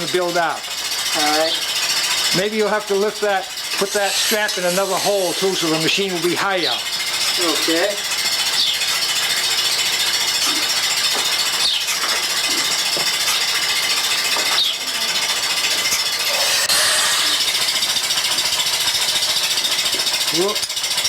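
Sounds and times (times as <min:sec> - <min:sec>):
pulsator pulsing: 0:00.0 - 0:21.0
milking machine air hiss: 0:02.9 - 0:08.1, 0:16.2 - 0:20.4.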